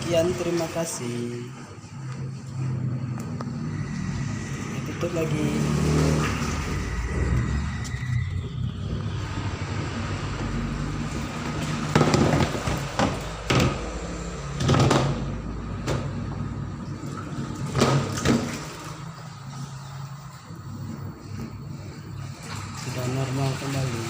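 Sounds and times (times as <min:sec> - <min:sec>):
steady low hum: 0:01.8 - 0:17.7.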